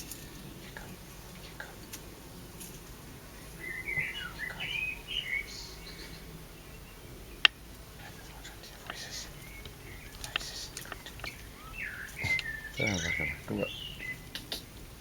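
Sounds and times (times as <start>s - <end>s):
small songbird twittering: 3.3s - 14.8s.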